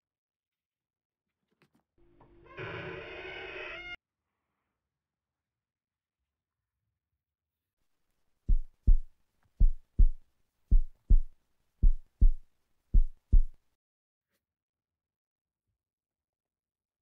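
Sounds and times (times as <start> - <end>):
heartbeat: 8.5 - 12.4, 13.0 - 13.6.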